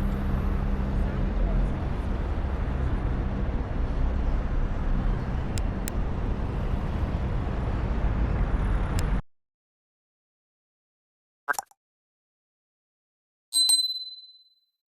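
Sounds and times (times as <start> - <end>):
traffic rumble: 0.0 - 9.2.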